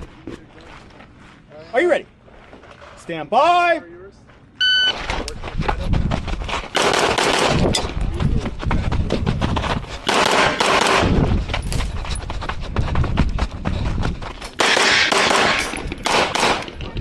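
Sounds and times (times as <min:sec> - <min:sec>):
rapid pistol shots: 0:06.8 - 0:07.7, 0:10.0 - 0:11.2, 0:14.6 - 0:16.7.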